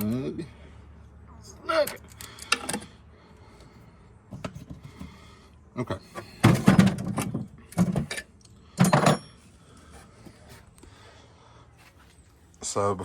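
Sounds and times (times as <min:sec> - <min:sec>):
hand tools clattering: 0:06.2 - 0:09.4.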